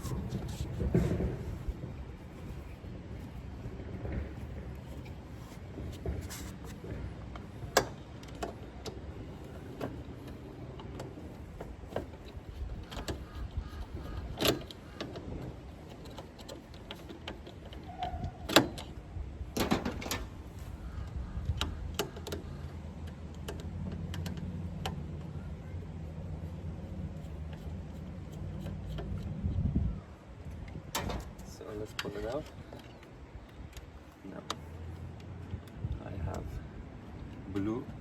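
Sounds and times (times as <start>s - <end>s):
steady low rumble: 0.0s - 8.2s
clicks and knocks of tools: 21.6s - 25.3s.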